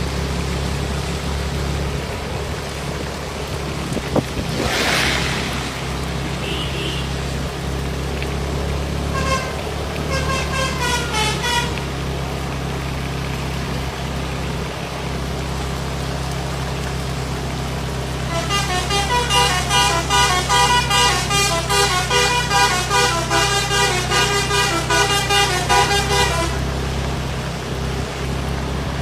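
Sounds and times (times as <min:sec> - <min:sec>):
low engine hum: 0:00.0 - 0:29.0
bus melody horn: 0:06.4 - 0:07.2, 0:09.0 - 0:12.1, 0:18.2 - 0:26.8.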